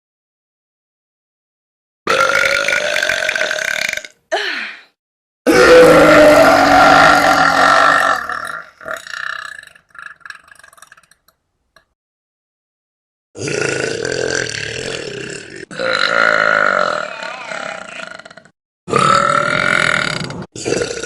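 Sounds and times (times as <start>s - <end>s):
girls burping: 15.9s - 18.4s.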